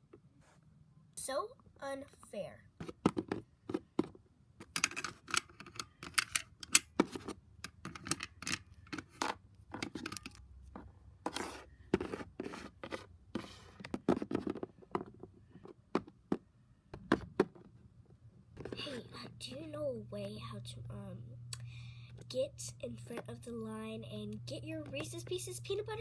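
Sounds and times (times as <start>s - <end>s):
plastic toy figures clicking: 4.6s - 6.9s.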